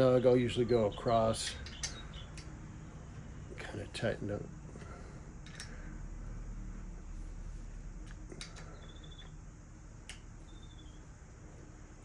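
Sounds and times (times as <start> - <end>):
steady low hum: 0.0 - 12.0
sharp metal clicks: 1.4 - 2.5.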